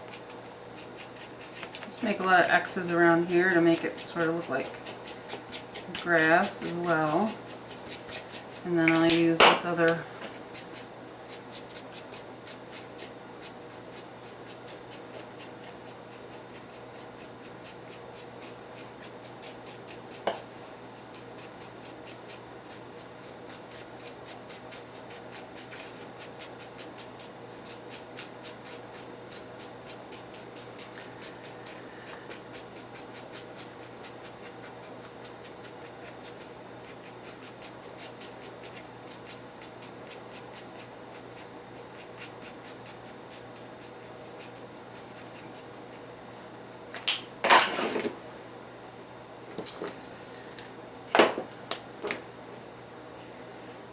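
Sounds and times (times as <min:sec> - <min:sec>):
pen scratching on paper: 0:00.1 - 0:01.7, 0:02.4 - 0:08.6, 0:10.6 - 0:20.2, 0:21.0 - 0:45.6.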